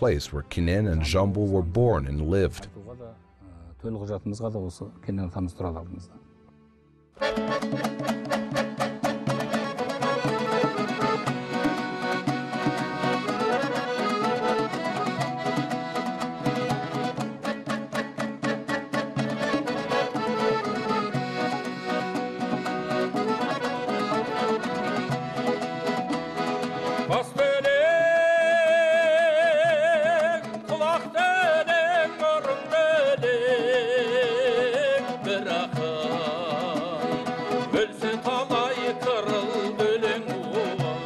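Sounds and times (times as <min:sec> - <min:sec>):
fast rhythmic accompaniment: 0:07.2 - 0:41.0.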